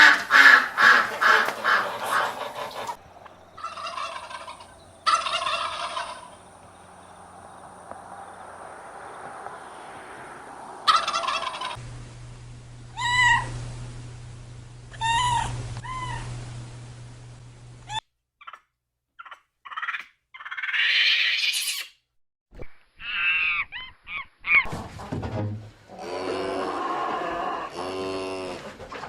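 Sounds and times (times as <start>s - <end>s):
poultry calling: 0.0s - 11.8s, 13.0s - 13.5s.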